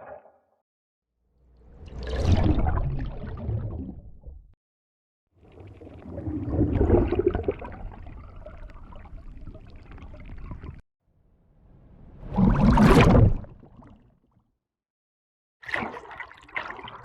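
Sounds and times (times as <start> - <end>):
water surge: 1.7 - 4.1, 5.5 - 8.2
water gurgling and splashing: 1.7 - 4.5, 5.4 - 10.8, 12.2 - 13.9, 15.6 - 17.0.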